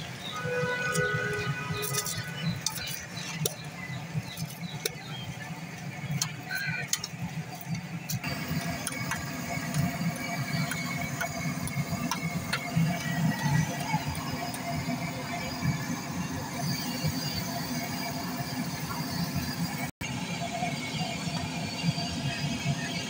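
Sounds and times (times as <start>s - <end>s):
traffic noise: 0.0s - 22.6s
sharp clicks and clatter: 0.2s - 15.1s.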